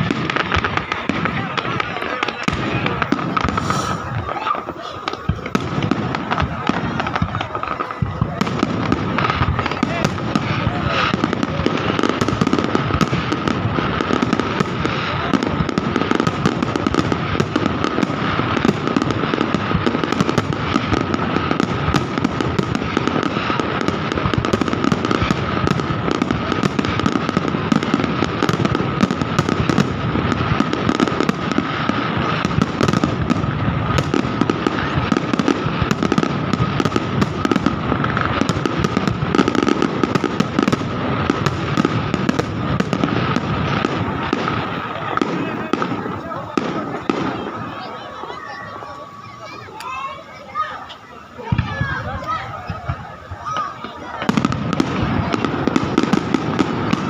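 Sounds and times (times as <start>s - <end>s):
fireworks bangs and crackling: 0.0s - 57.0s.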